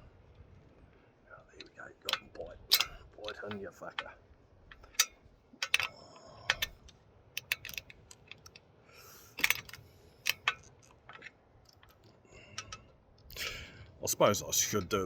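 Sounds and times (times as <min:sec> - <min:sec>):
sharp clicks and knocks: 0:01.6 - 0:08.6, 0:09.4 - 0:13.3.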